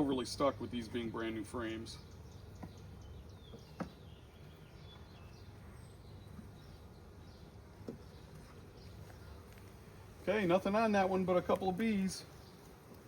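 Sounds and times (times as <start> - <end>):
bees humming: 0.0 - 13.0
birds chirping faintly: 0.0 - 13.0.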